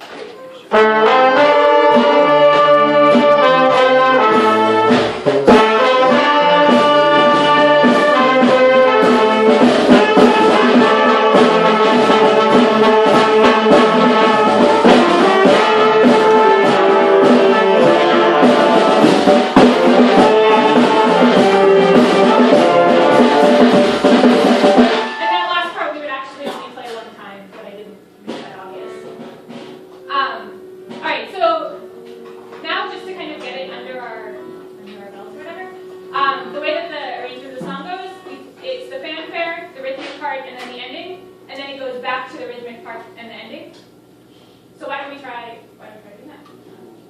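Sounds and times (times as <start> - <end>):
brass band playing: 0.7 - 26.2, 28.6 - 38.4.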